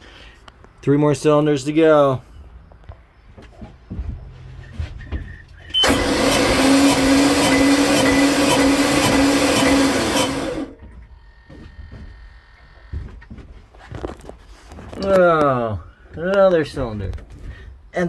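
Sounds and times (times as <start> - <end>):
starter motor whine: 5.0 - 11.0.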